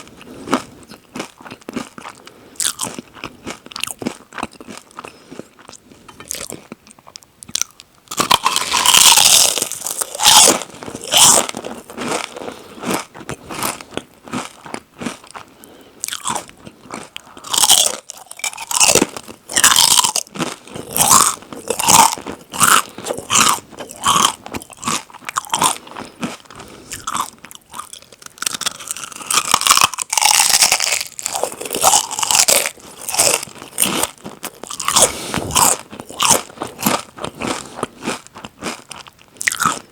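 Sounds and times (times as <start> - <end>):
crunching and chewing chips: 0.0 - 39.9.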